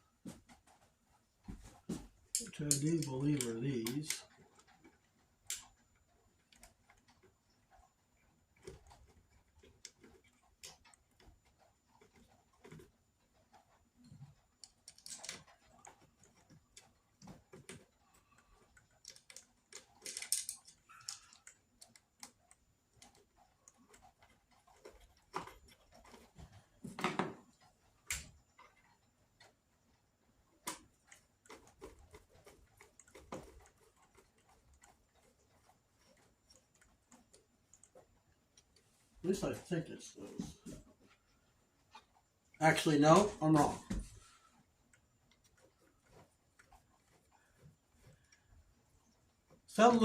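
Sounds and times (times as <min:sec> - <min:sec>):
small clicks of plastic parts: 0:02.2 - 0:29.6, 0:30.5 - 0:38.9.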